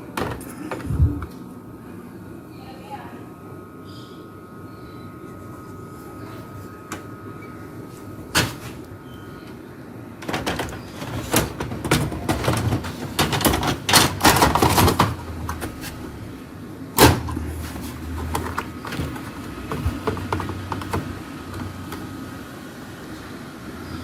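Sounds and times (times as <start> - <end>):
plastic parts clicking and rattling: 10.2 - 16.0, 17.0 - 22.2.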